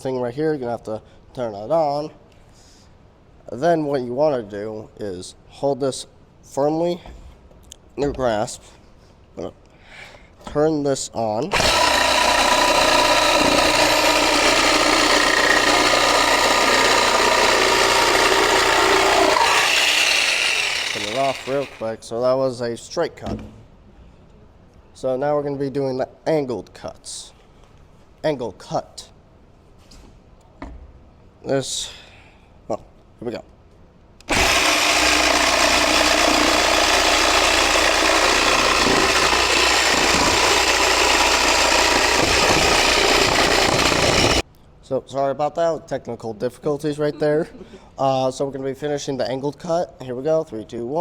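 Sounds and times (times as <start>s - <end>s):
electric jigsaw cutting board: 11.5s - 21.8s, 34.3s - 44.4s.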